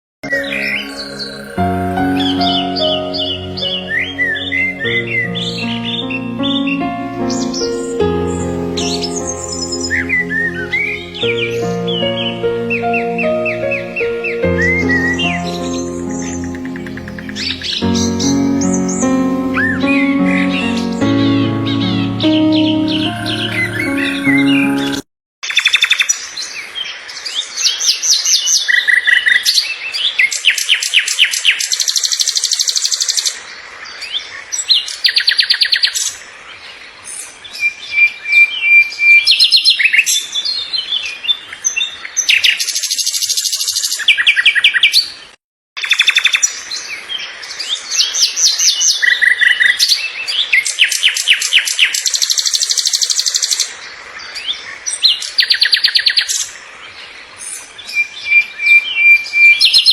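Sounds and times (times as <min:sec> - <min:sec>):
songbird singing trills: 0:00.2 - 0:26.1.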